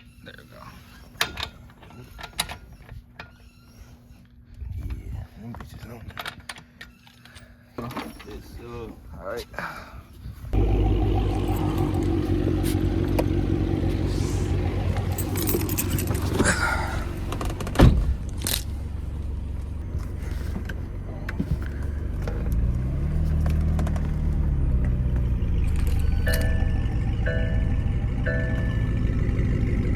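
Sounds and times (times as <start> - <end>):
car engine running: 10.5 - 29.9.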